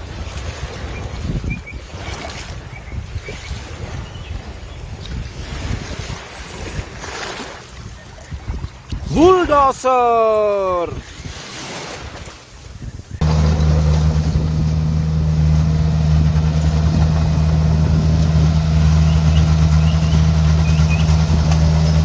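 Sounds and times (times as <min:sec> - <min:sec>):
bulldozer diesel engine running: 0:13.2 - 0:22.0.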